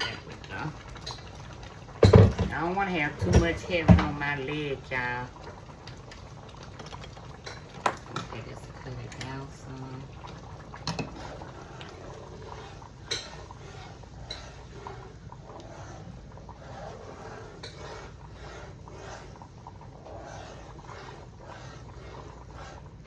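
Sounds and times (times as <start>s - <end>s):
low kitchen hum: 0.0s - 23.0s
cookware clinking: 13.0s - 13.5s.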